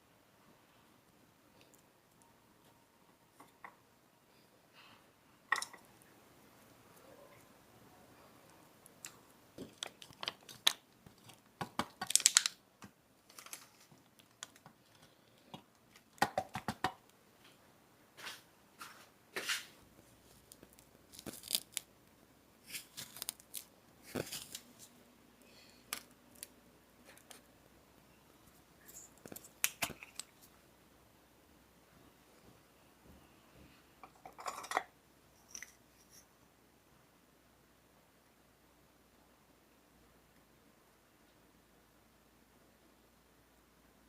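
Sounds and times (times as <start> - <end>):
crinkling rustles: 13.2 - 16.2, 18.2 - 21.9, 22.6 - 25.0.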